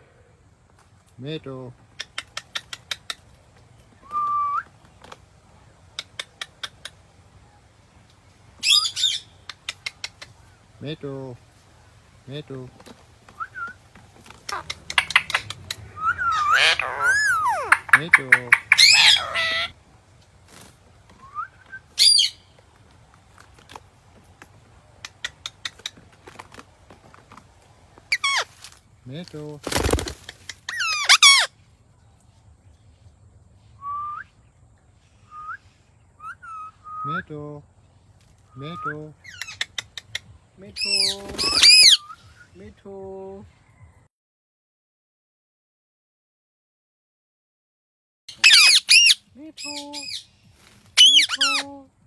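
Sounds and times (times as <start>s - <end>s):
parrot clicking: 14.3s - 19.6s
parrot whistling: 14.5s - 19.7s, 21.2s - 22.4s, 36.2s - 37.1s, 41.5s - 42.3s, 48.3s - 49.2s, 51.0s - 51.6s
parrot screeching: 14.5s - 19.8s, 22.0s - 22.4s, 28.1s - 28.6s, 30.7s - 31.5s, 40.8s - 42.1s, 48.3s - 50.3s, 51.0s - 51.6s.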